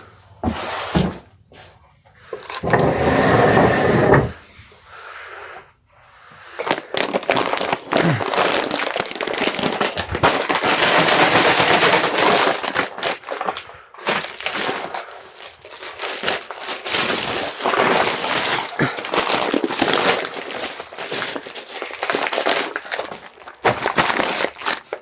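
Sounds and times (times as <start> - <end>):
plastic packing wrap crinkling: 6.5 - 25.0.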